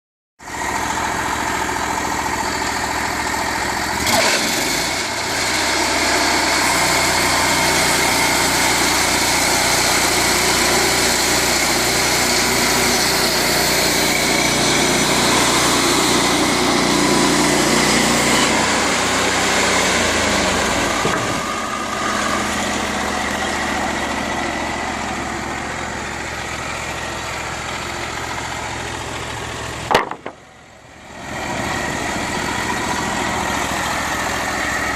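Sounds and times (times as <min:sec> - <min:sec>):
sawmill engine drone: 0:00.4 - 0:34.9
single knock: 0:29.9 - 0:30.4.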